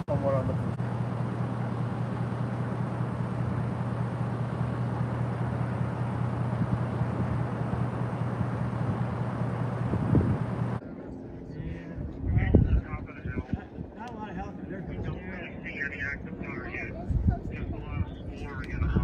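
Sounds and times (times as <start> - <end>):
vehicle engine running: 0.0 - 13.2.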